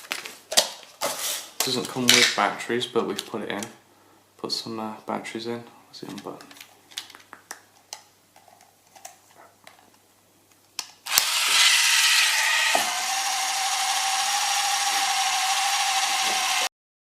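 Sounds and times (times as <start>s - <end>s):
small motor whirring: 11.1s - 16.7s.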